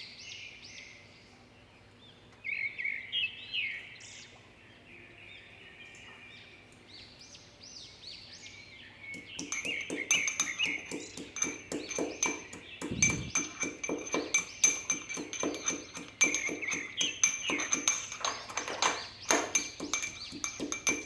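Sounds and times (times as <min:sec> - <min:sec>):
small birds chirping: 0:00.0 - 0:21.0
sharp ringing strikes: 0:09.2 - 0:18.5.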